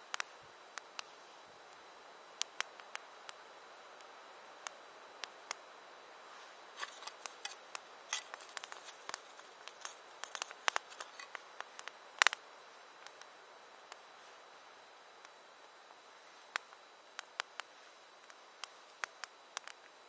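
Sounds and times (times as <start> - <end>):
campfire crackling and popping: 0.0 - 14.2, 14.9 - 20.0
faint fire hiss: 0.0 - 20.0.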